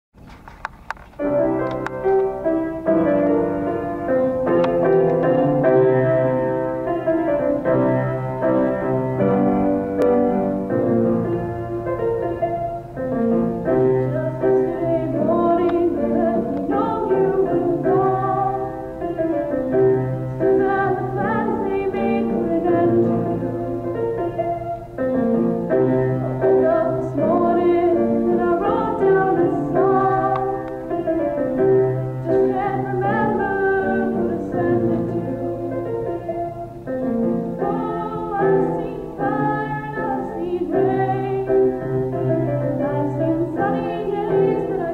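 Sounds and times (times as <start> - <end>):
piano music: 0.2 - 44.9
person singing: 13.8 - 24.4, 25.8 - 31.6, 32.2 - 36.7, 37.5 - 44.9.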